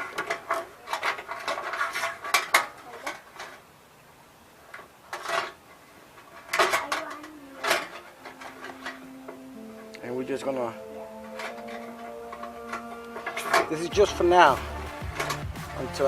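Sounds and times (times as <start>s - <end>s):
scraping rustles: 0.0s - 3.7s, 4.5s - 9.9s
small metal parts clinking: 6.2s - 9.1s.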